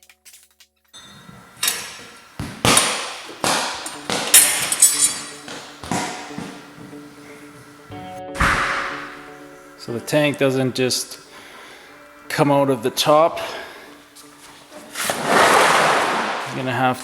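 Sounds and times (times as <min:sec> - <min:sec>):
metallic clanks of hand tools: 0:03.7 - 0:05.4.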